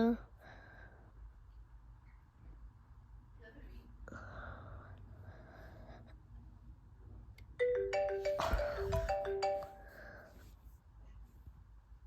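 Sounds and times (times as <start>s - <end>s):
phone ringtone melody: 7.6s - 10.1s.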